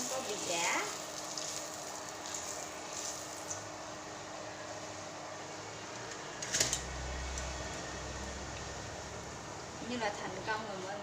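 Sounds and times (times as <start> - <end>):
cake sizzling in hot oil: 0.0 - 4.8.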